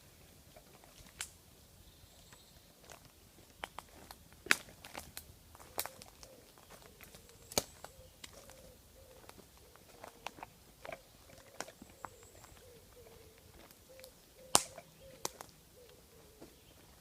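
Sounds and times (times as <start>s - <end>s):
footsteps on leaf litter: 2.8s - 14.2s
twigs snapping: 4.5s - 6.3s, 7.0s - 8.6s, 14.0s - 15.6s.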